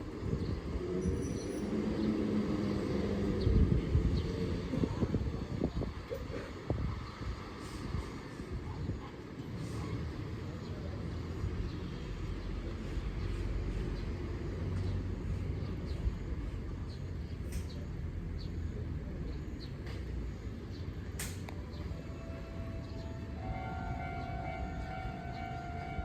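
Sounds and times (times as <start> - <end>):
low rumble of traffic: 0.0 - 26.0
sharp click: 17.5 - 17.8, 21.2 - 21.6.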